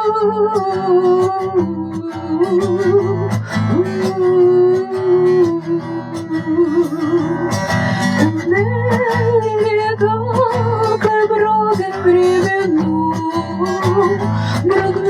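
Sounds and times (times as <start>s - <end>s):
acoustic guitar accompaniment: 0.0s - 15.0s.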